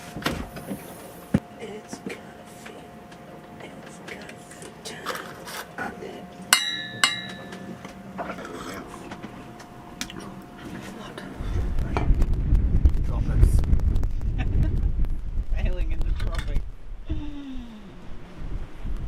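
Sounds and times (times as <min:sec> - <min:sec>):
sharp ringing clinks: 0:06.5 - 0:07.7
low rumbling wind noise: 0:09.0 - 0:19.0.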